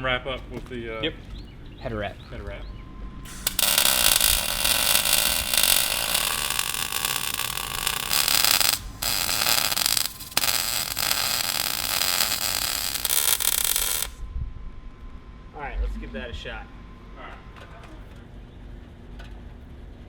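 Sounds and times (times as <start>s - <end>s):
welding arc crackling: 3.3s - 14.2s.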